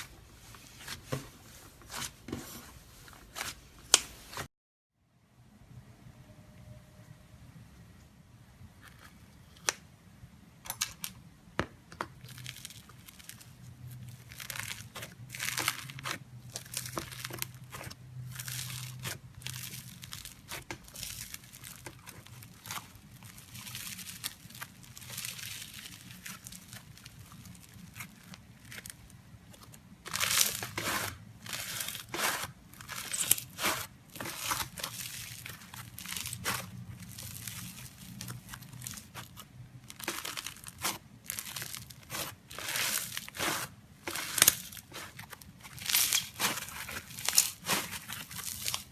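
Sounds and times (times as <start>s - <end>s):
slime crackling and popping: 12.2s - 48.9s.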